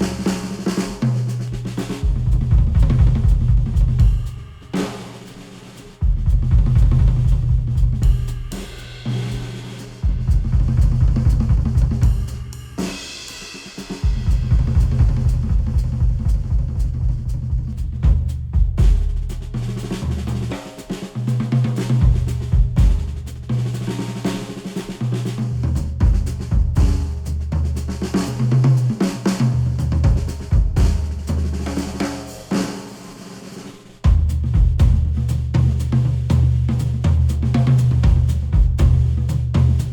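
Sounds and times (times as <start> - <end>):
music with drums and heavy bass: 0.0 - 39.9
drum-led pop music: 1.6 - 21.0.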